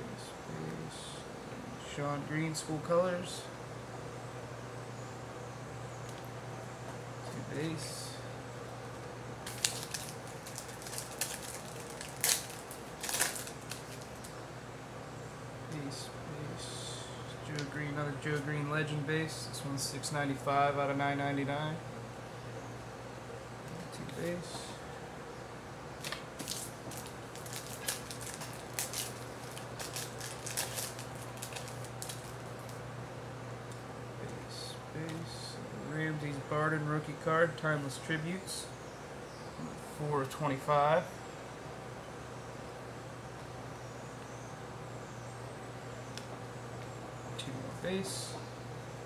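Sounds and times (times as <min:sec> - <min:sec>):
foil card pack crinkling: 0:09.4 - 0:14.3, 0:26.0 - 0:32.8.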